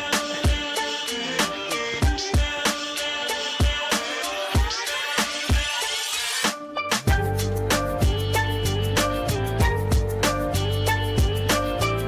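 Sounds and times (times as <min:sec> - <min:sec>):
hip-hop beat: 0:00.0 - 0:12.0
deep kick drums: 0:07.1 - 0:08.3, 0:09.6 - 0:10.3, 0:11.2 - 0:11.5.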